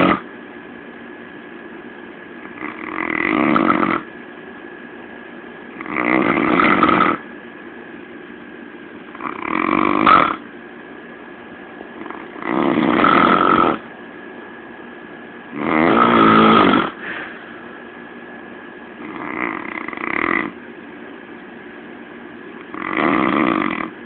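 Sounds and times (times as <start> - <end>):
man snoring: 0.0 - 0.3, 2.4 - 4.1, 5.8 - 7.2, 9.2 - 10.4, 12.0 - 13.8, 15.5 - 17.0, 19.0 - 20.6, 22.7 - 24.0.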